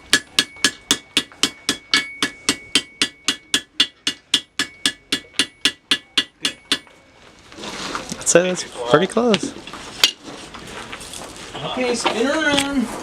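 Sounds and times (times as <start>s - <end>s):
hammer striking iron on anvil: 0.0s - 7.0s.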